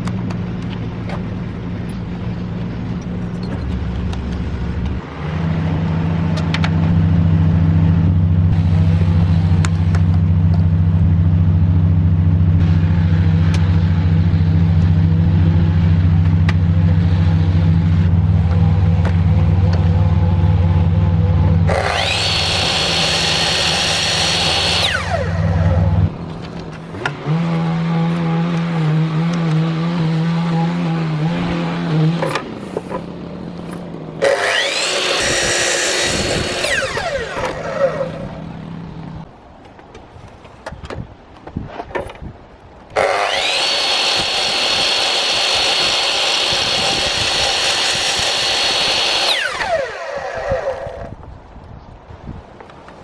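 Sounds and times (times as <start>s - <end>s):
low motor hum: 0.0s - 39.7s, 43.0s - 51.3s
power tool whine: 16.9s - 26.2s, 34.2s - 38.6s, 43.0s - 51.1s.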